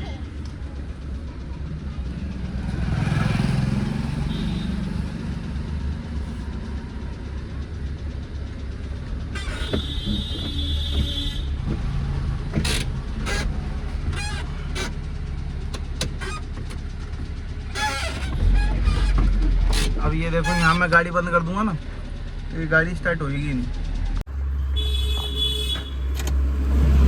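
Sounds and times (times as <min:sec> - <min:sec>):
van engine rumbling: 0:00.0 - 0:27.0
clattering from underneath: 0:09.1 - 0:20.8.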